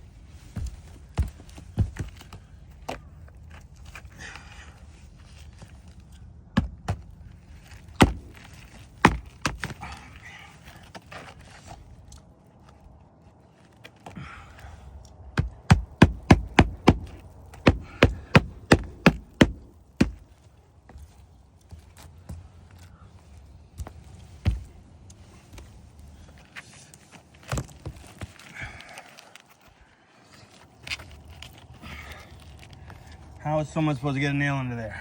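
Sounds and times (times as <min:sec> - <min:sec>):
hammer striking a nail: 0:08.0 - 0:08.4, 0:15.4 - 0:20.2.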